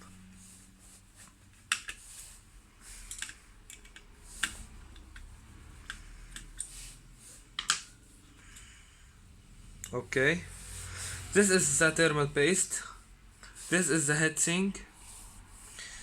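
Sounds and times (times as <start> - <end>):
screwdriver and metal parts clicking: 3.0 - 6.7.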